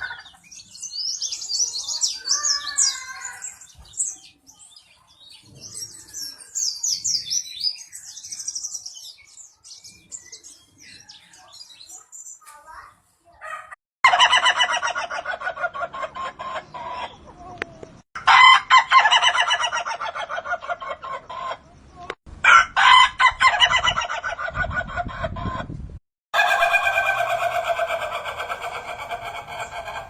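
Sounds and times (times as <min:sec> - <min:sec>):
rooster stuttering crow: 0:26.4 - 0:30.0.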